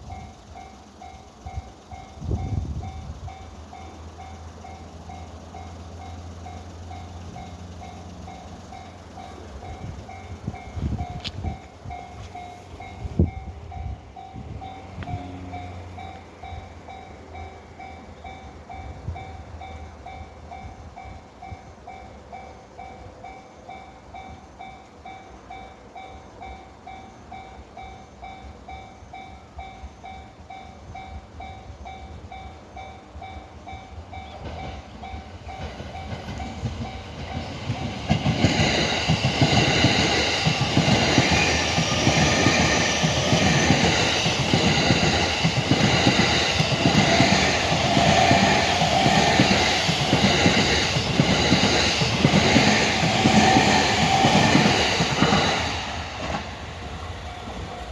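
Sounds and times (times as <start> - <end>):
train wheels clattering over rails: 26.5 - 57.9.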